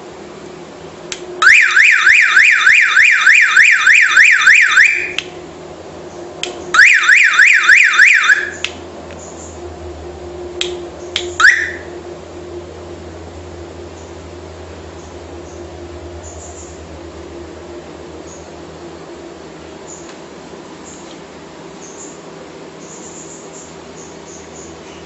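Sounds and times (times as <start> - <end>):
car alarm siren warbling: 1.4 - 5.2, 6.7 - 8.6, 11.2 - 12.0.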